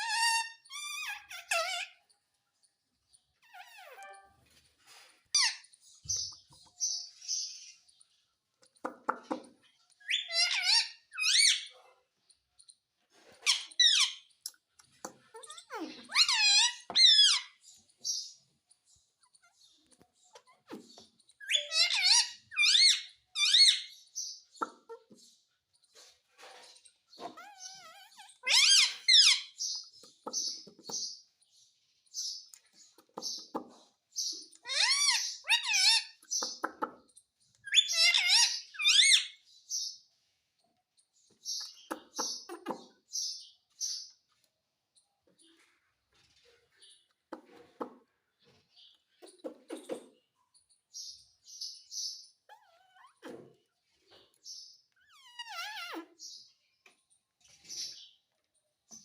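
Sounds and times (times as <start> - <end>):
parrot squawking and warbling: 0.0 - 2.1, 3.4 - 4.4, 10.0 - 11.8, 15.1 - 17.6, 20.3 - 23.9, 27.1 - 29.6, 34.6 - 36.3, 37.6 - 39.4, 52.4 - 53.5, 54.9 - 56.4
parrot chirps and clicks: 0.0 - 4.6, 5.4 - 26.0, 26.9 - 31.5, 32.2 - 39.4, 41.0 - 45.1.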